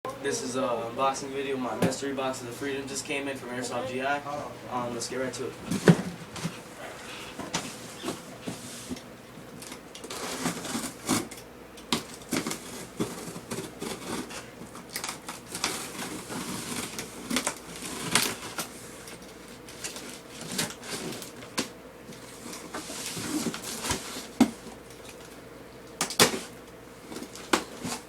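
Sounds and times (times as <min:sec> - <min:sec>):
cardboard box being unpacked: 0:10.0 - 0:11.3, 0:11.9 - 0:18.8, 0:19.5 - 0:24.8.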